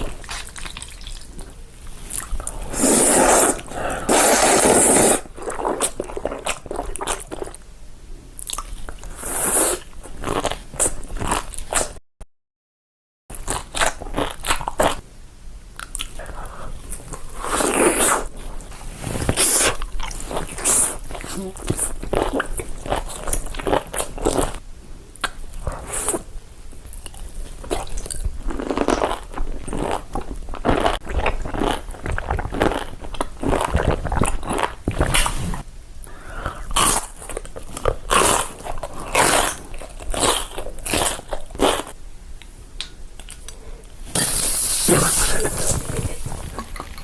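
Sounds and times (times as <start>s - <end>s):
crunchy bites and chewing: 36.6s - 41.9s.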